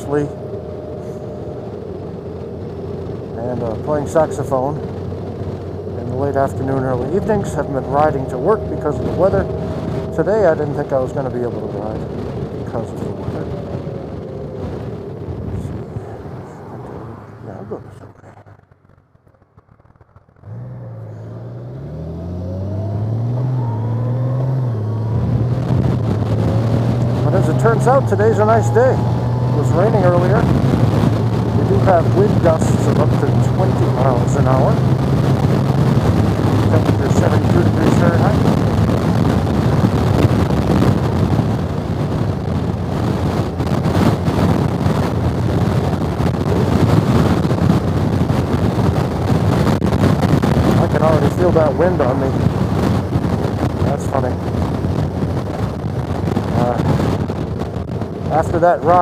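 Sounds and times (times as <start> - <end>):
motorcycle engine accelerating: 0.0 - 59.0
wind buffeting microphone: 0.0 - 59.0.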